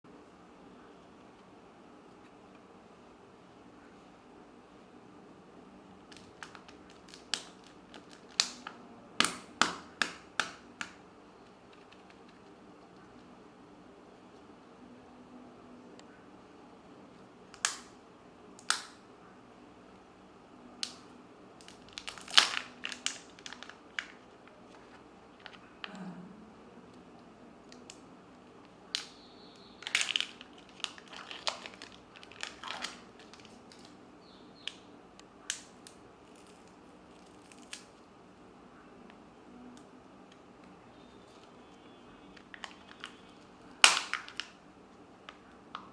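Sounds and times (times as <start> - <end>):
foil wrapper crinkling: 6.1 - 8.8, 21.6 - 25.7, 29.0 - 34.0, 42.3 - 44.6
plastic clicks and snaps: 17.5 - 17.9, 18.6 - 19.0.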